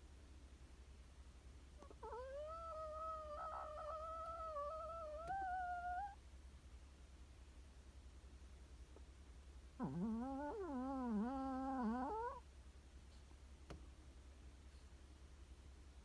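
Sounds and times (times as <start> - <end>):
dog snoring with whistling breath: 9.8 - 12.4.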